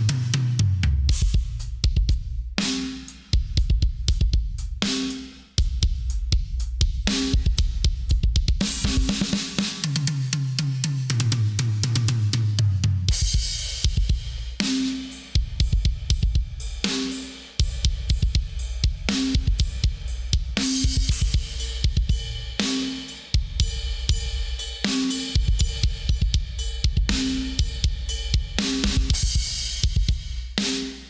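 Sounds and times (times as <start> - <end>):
drum kit beat: 0.0 - 31.0
tom drum fill: 25.4 - 30.6.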